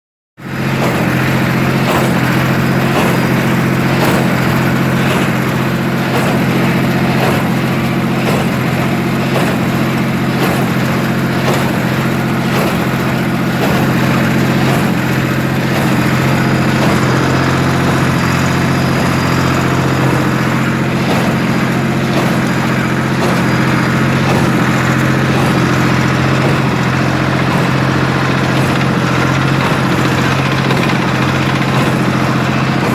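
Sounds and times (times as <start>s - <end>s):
tractor diesel engine running: 0.4s - 32.9s.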